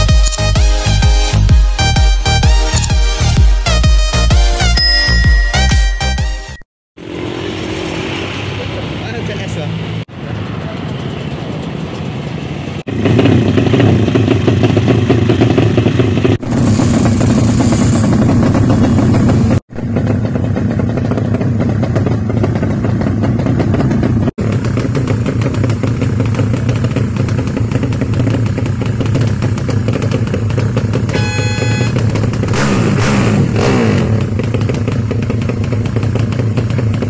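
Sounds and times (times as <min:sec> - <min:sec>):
racing motorcycle engines: 0:07.0 - 0:37.0.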